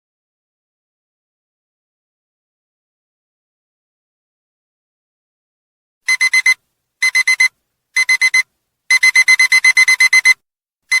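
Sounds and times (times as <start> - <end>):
high-pitched digital alarm beeping: 6.1 - 11.0.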